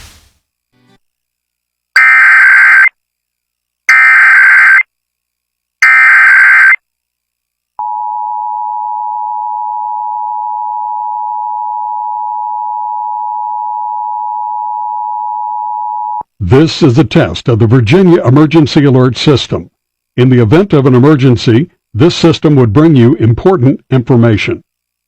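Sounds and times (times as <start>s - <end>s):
screeching digital data bursts: 2.0s - 3.0s, 3.9s - 4.9s, 5.8s - 6.8s.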